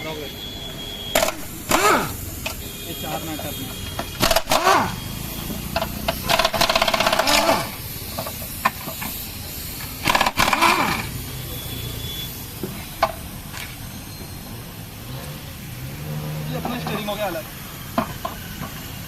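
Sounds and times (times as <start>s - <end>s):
air wrench running: 0.7s - 19.0s
sharp metal clicks: 1.2s - 2.6s, 4.0s - 9.2s, 10.0s - 11.1s.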